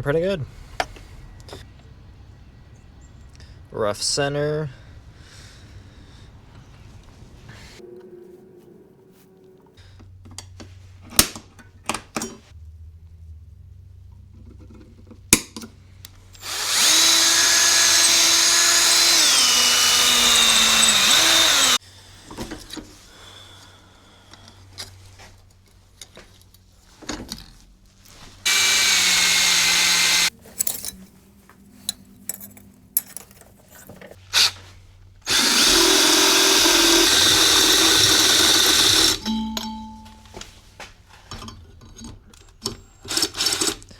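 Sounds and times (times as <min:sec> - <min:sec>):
electric drill drilling: 0:16.4 - 0:21.8, 0:28.5 - 0:30.3, 0:35.3 - 0:39.3
handling clicks and knocks: 0:31.8 - 0:34.2.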